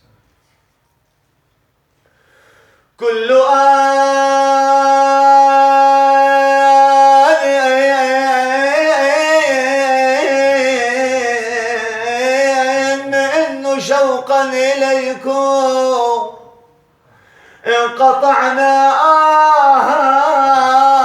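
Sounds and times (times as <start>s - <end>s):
man singing devotional chant: 3.0s - 16.7s, 17.6s - 21.0s.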